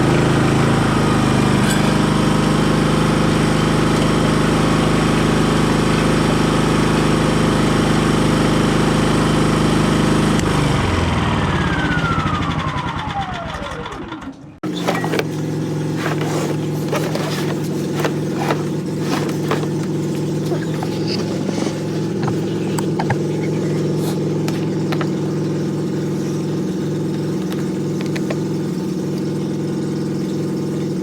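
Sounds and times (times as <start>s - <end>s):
sharp clicks and knocks: 14.6s - 25.3s
generator engine running: 14.6s - 31.0s.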